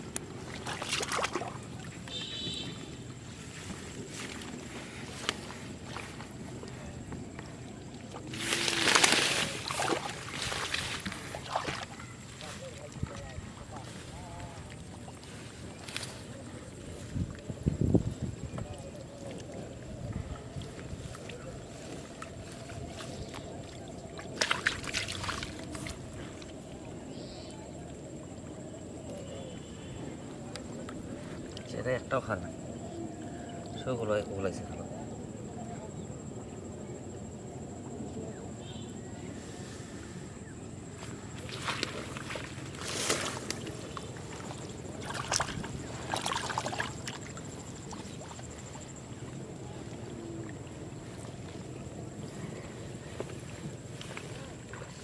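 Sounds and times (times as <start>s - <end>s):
water splashing and sloshing: 0.0s - 34.3s, 38.9s - 55.0s.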